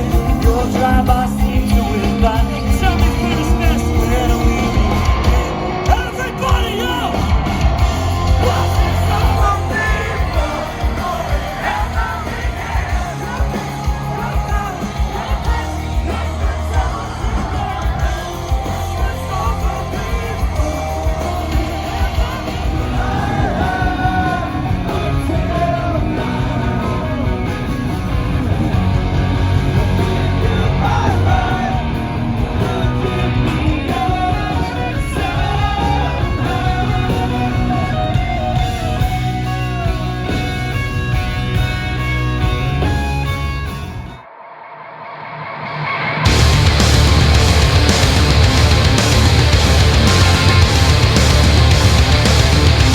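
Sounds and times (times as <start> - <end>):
person singing and yelling: 0.0 - 27.7
live rock band playing: 0.0 - 44.2, 45.9 - 52.9.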